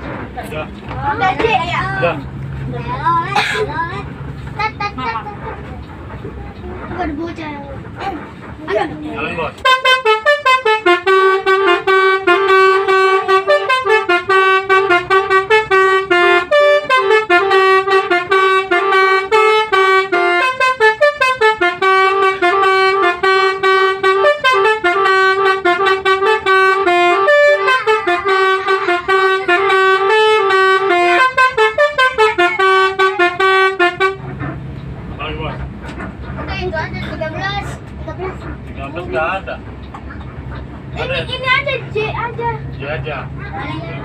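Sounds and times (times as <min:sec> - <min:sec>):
multi-tone bus horn tune: 0:09.2 - 0:39.4.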